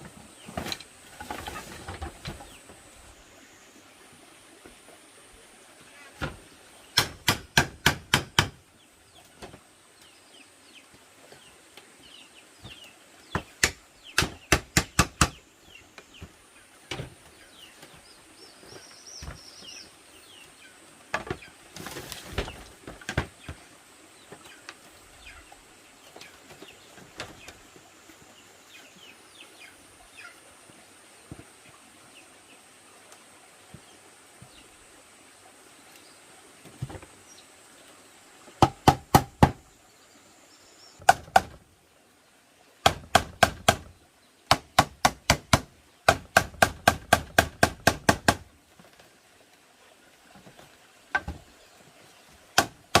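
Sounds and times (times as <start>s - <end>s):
scraping rustle: 0.0s - 2.8s, 21.2s - 23.4s
tool striking bamboo: 7.0s - 8.6s, 13.3s - 15.4s, 38.6s - 39.6s, 41.0s - 41.6s, 42.8s - 43.9s, 44.5s - 48.4s, 52.6s - 53.0s
small birds chirping: 8.7s - 32.7s.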